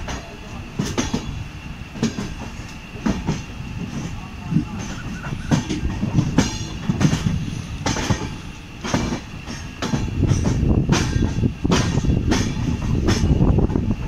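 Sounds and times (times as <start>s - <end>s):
train low rumble: 0.0s - 14.0s
train wheels knocking on rail joints: 0.0s - 14.0s
wheel squeal: 4.6s - 6.8s.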